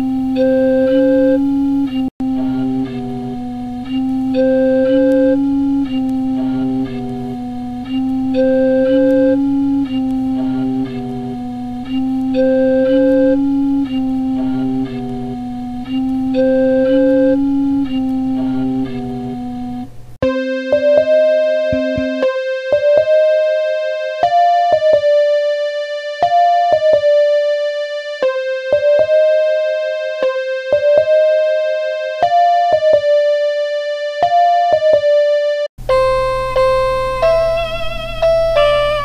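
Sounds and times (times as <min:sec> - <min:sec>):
electric piano melody: 0:00.0 - 0:39.0
wavering vibrato synth tones: 0:35.9 - 0:39.0.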